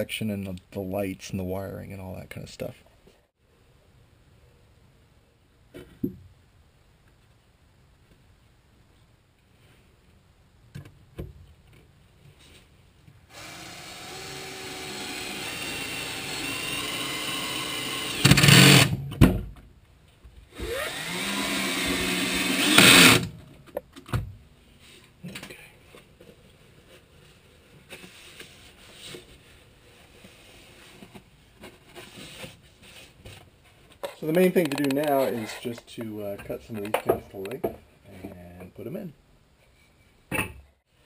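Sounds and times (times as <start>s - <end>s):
power drill driving screws: 13.3s - 19.0s, 20.6s - 23.3s.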